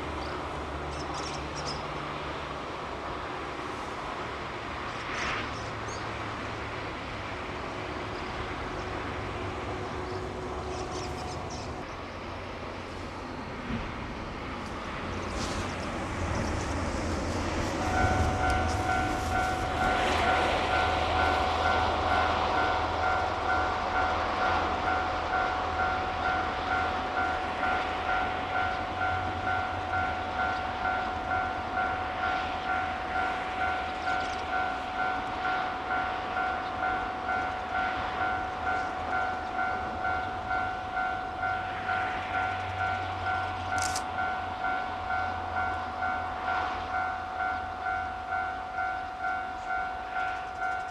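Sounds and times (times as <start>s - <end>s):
train running past: 0.0s - 50.9s
steady high tone: 16.2s - 50.9s.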